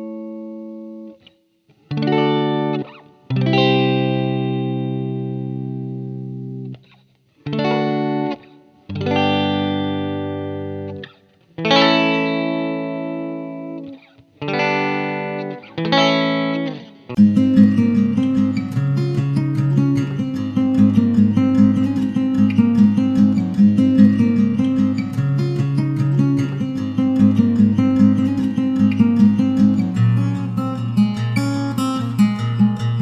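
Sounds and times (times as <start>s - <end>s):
electric guitar chords ringing: 0.0s - 1.2s, 1.9s - 6.8s, 7.4s - 33.0s.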